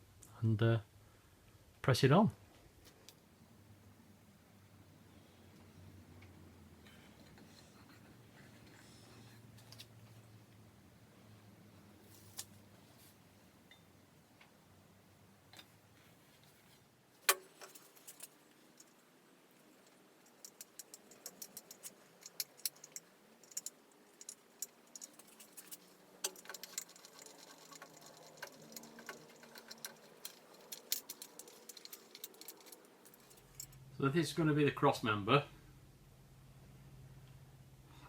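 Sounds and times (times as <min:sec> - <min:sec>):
metal parts clicking and clinking: 0:17.3 - 0:33.8.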